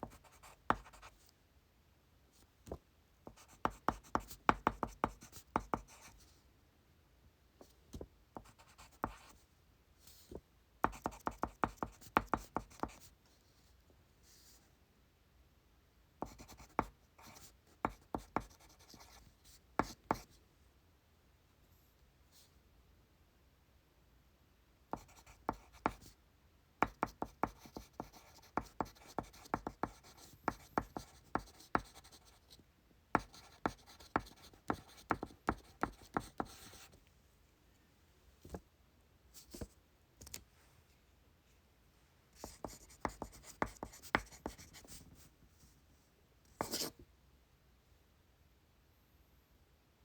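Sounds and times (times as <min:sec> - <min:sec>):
pencil writing on paper: 0:00.0 - 0:01.1, 0:03.3 - 0:06.1, 0:08.4 - 0:09.3, 0:10.9 - 0:13.1, 0:16.2 - 0:19.2, 0:24.9 - 0:26.1, 0:26.8 - 0:32.5, 0:33.2 - 0:36.9, 0:42.4 - 0:45.0, 0:46.6 - 0:46.9.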